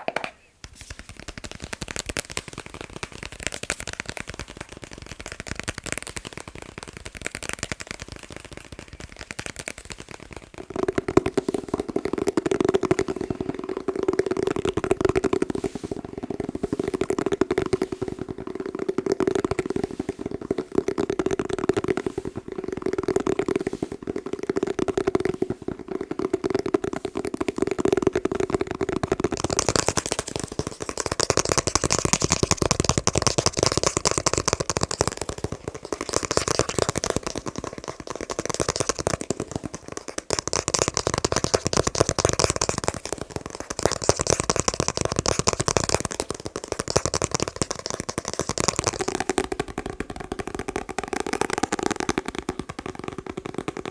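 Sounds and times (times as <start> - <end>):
fingertips tapping on objects: 0.0 - 53.9.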